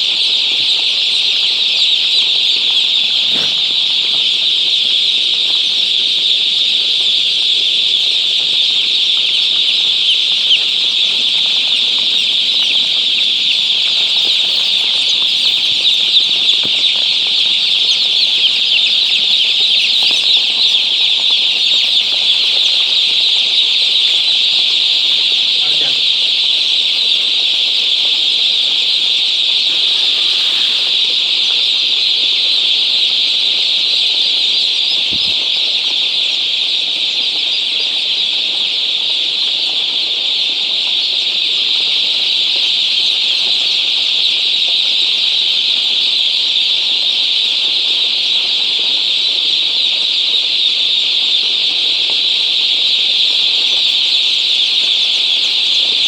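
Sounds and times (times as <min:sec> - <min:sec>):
flock of chicks cheeping: 0:00.0 - 0:56.0.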